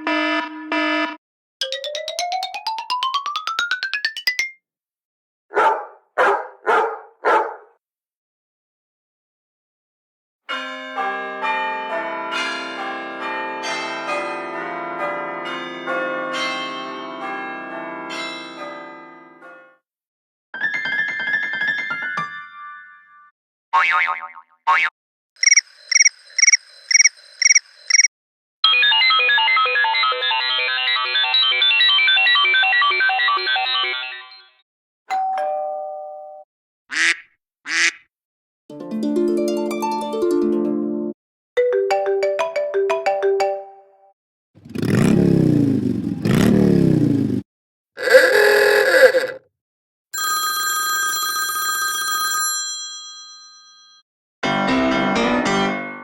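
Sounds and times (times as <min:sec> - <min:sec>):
bell-like ringtone melody: 0:00.0 - 0:04.6, 0:25.4 - 0:36.4, 0:50.2 - 0:54.0
plucked harp-like ringtone tune: 0:01.6 - 0:04.6
electronic beeping melody: 0:25.4 - 0:28.1
ding-dong doorbell chime: 0:35.1 - 0:36.4, 0:50.2 - 0:54.0
duck quacks: 0:36.9 - 0:38.1, 0:48.0 - 0:49.4.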